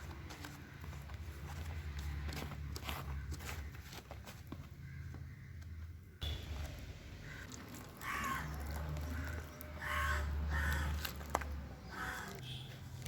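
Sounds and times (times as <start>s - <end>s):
crow calling: 3.0s - 12.9s.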